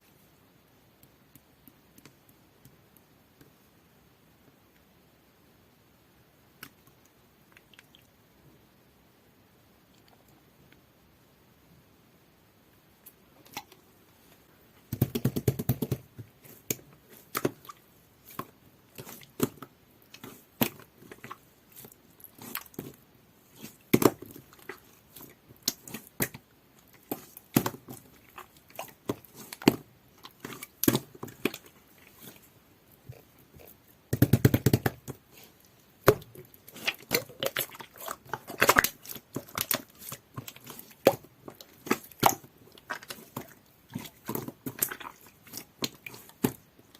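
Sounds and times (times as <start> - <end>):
slime squishing: 14.9 - 46.9.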